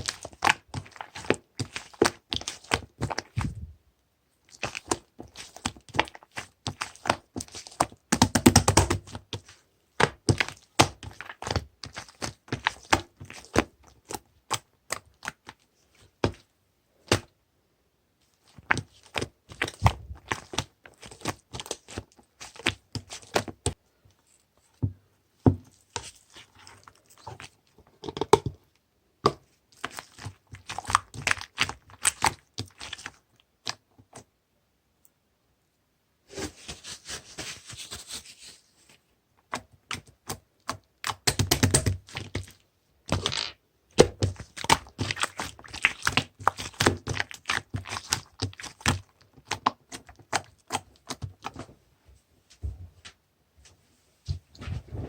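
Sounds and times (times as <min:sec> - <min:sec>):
paper or plastic crinkling: 0:36.3 - 0:39.0.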